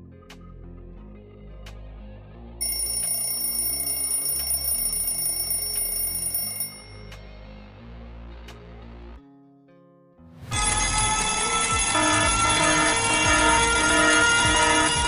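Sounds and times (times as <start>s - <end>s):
background music: 0.0s - 15.0s
alarm clock ringing: 2.6s - 7.2s, 10.5s - 15.0s.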